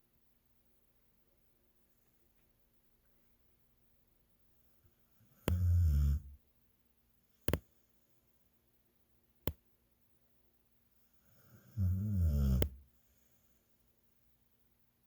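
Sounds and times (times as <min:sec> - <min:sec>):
loud low snore: 0:05.5 - 0:06.3, 0:11.5 - 0:12.8.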